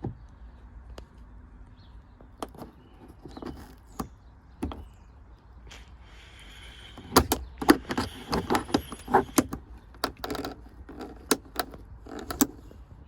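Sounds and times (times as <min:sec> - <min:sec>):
screwdriver clicking on plastic: 0:07.0 - 0:12.6.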